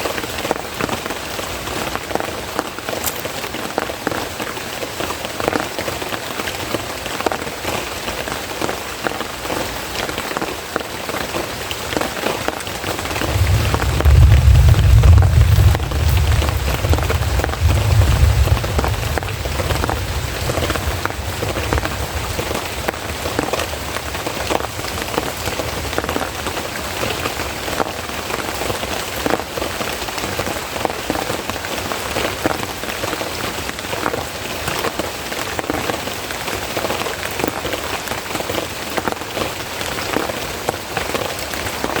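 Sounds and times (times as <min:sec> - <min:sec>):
heavy rain falling: 0:00.0 - 0:42.0
raindrops clicking and splashing: 0:00.0 - 0:42.0
low rumble: 0:13.0 - 0:22.4.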